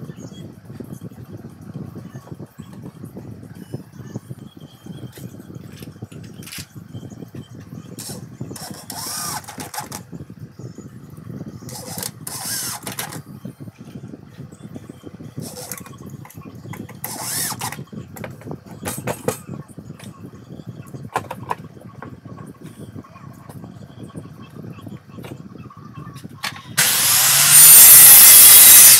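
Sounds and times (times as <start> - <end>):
grinding machine motor running: 8.0 - 10.0, 11.7 - 13.2, 17.0 - 17.8, 26.8 - 28.9
hissing bursts of grinding: 8.6 - 10.0, 11.7 - 13.2, 17.0 - 17.8, 26.8 - 28.9.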